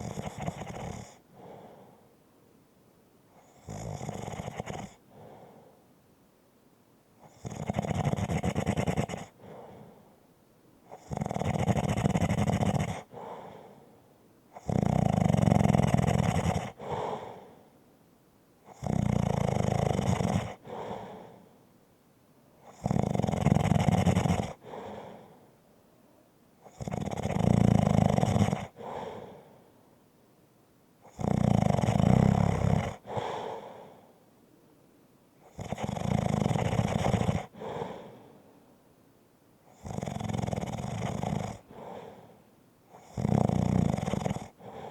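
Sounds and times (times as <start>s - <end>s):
person snoring: 0.0s - 2.0s, 3.4s - 5.6s, 7.2s - 10.0s, 10.9s - 13.8s, 14.6s - 17.6s, 18.7s - 21.4s, 22.6s - 25.4s, 26.6s - 29.5s, 31.1s - 34.1s, 35.4s - 38.4s, 39.7s - 44.9s.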